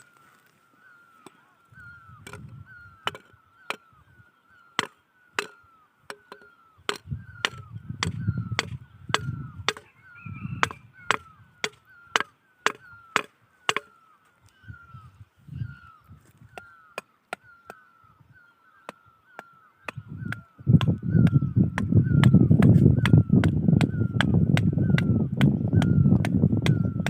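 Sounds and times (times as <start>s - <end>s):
sharp chopping strikes: 2.2s - 3.8s, 4.8s - 9.9s, 10.6s - 14.0s, 19.4s - 27.0s.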